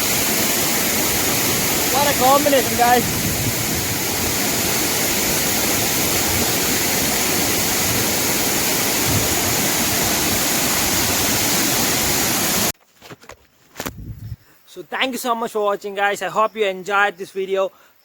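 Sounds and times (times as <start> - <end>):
waterfall rushing: 0.0 - 12.7.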